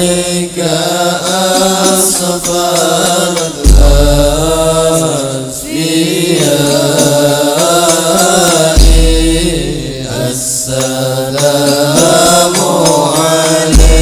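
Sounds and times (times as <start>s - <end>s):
devotional chant singing: 0.0s - 14.0s
deep drum beat: 1.6s - 5.2s, 8.4s - 10.2s, 12.0s - 14.0s.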